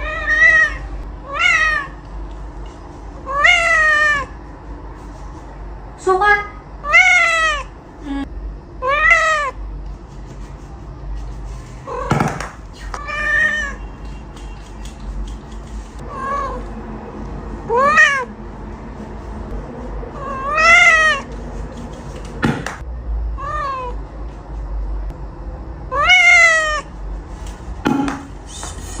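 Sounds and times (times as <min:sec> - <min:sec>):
cat meowing: 0:00.0 - 0:02.0, 0:03.3 - 0:04.4, 0:13.0 - 0:13.9, 0:17.7 - 0:18.3, 0:20.2 - 0:21.3, 0:25.9 - 0:26.9
sharp knocks: 0:22.4 - 0:22.8, 0:27.8 - 0:28.3.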